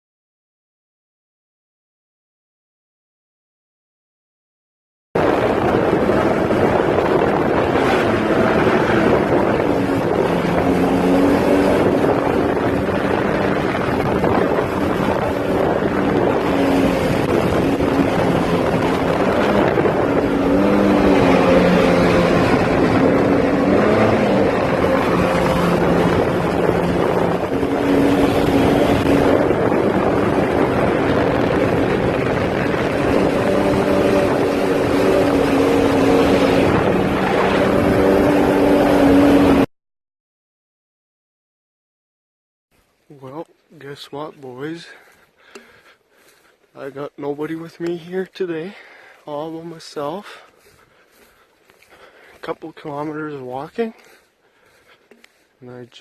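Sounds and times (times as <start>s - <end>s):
motor running: 5.2s - 39.7s
wind noise on microphone: 5.2s - 39.7s.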